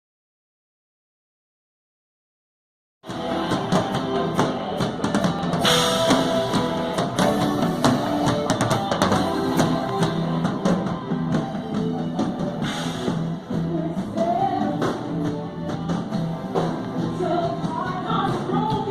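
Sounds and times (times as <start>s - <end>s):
drum kit: 3.0s - 18.9s
rock guitar: 3.0s - 18.9s.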